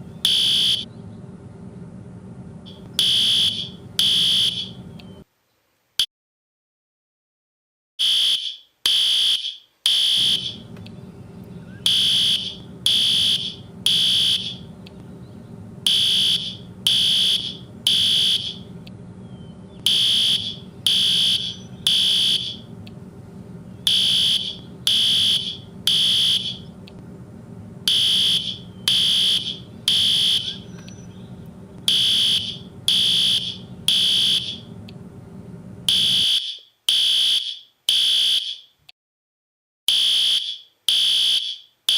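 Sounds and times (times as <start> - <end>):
steady low hum: 0.0 - 5.3, 10.0 - 36.4
fire alarm beeping: 0.2 - 0.9, 2.7 - 4.8, 8.0 - 10.7, 11.8 - 14.7, 15.9 - 18.7, 19.9 - 22.7, 23.9 - 26.7, 27.9 - 31.1, 31.9 - 34.7, 35.9 - 38.6, 39.9 - 41.7.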